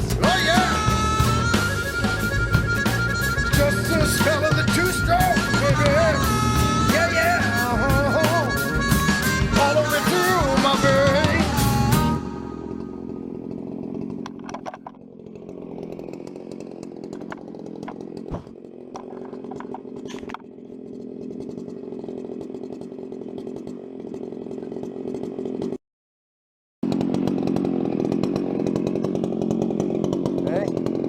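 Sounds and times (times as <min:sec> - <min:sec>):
chainsaw running: 0:00.0 - 0:25.8, 0:26.8 - 0:31.0
clicks and knocks: 0:14.2 - 0:15.0.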